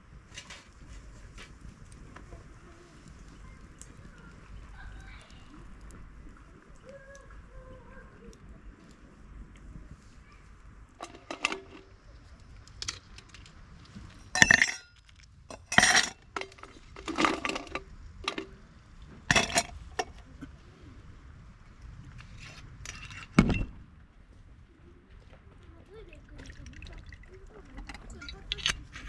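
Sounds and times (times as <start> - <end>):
dishes and cookware clinking: 11.0 - 11.9, 14.3 - 18.6, 19.3 - 20.2.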